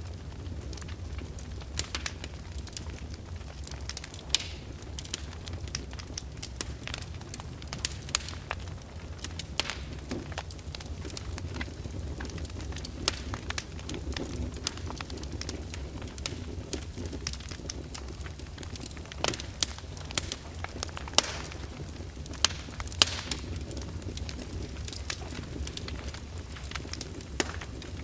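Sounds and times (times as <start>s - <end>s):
fire crackling and popping: 0.0s - 28.0s.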